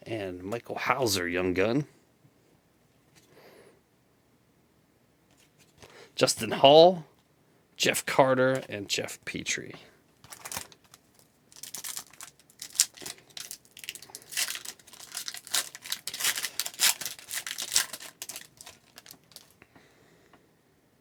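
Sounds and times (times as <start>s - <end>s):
foil wrapper tearing and crinkling: 10.3s - 19.6s.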